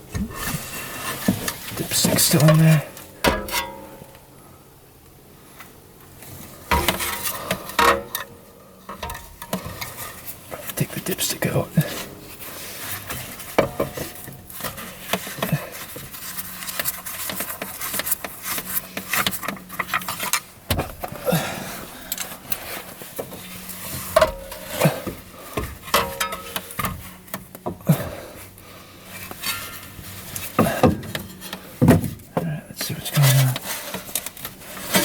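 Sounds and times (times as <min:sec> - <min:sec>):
hand tools clinking on metal: 0:02.0 - 0:04.1, 0:25.9 - 0:27.0.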